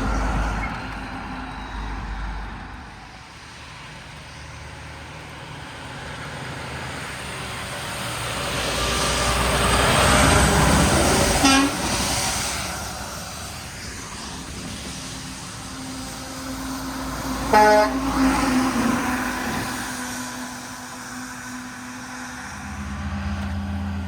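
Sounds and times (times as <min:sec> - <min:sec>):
truck passing by: 0:00.0 - 0:24.0
truck horn toot: 0:11.4 - 0:11.9, 0:17.5 - 0:18.3.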